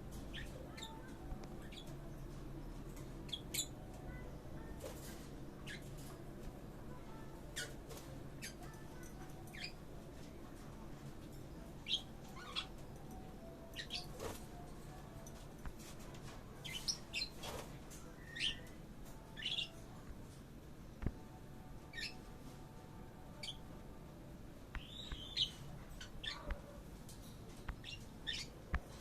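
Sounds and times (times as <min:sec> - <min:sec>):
low steady hum: 0:00.0 - 0:29.0
birds chirping: 0:00.1 - 0:06.2, 0:11.6 - 0:15.3, 0:16.5 - 0:20.0, 0:21.1 - 0:23.8, 0:24.7 - 0:29.0.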